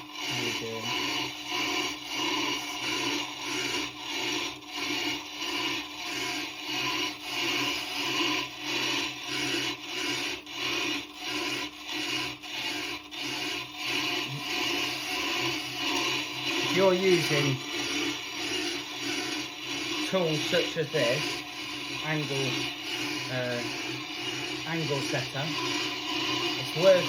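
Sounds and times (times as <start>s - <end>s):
diamond scraping grinding stone: 0.2s - 27.0s
machine humming: 12.2s - 27.0s.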